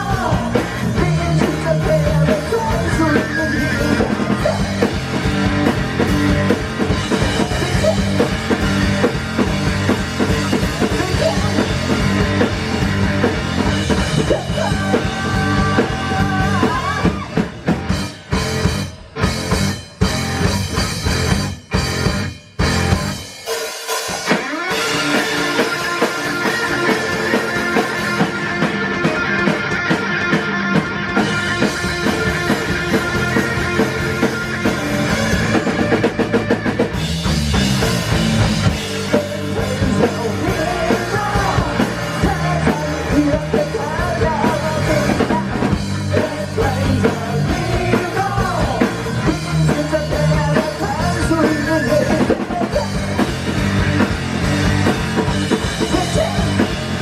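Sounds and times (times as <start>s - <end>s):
person singing: 0.0s - 5.0s, 10.8s - 12.4s, 14.2s - 17.5s, 38.9s - 53.2s, 55.8s - 57.0s
rock band playing live: 0.0s - 57.0s.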